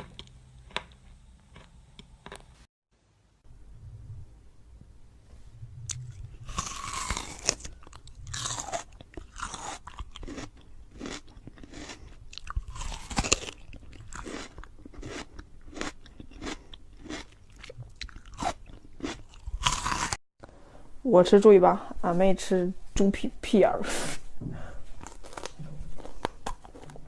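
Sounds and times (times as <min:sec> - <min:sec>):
person chewing crunchy food: 0:05.9 - 0:20.2, 0:24.9 - 0:27.0.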